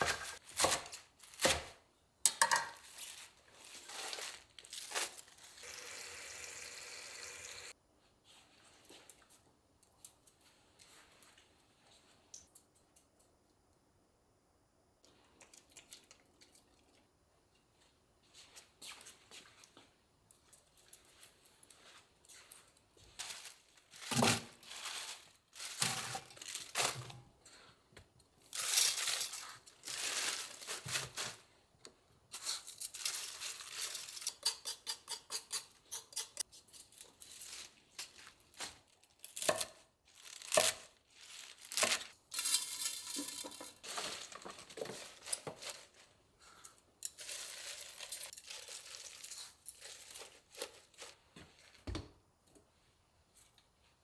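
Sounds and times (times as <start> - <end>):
packaging crinkling and tearing: 3.0 - 5.7, 23.2 - 27.1, 37.0 - 42.2, 43.8 - 46.2, 47.1 - 51.8.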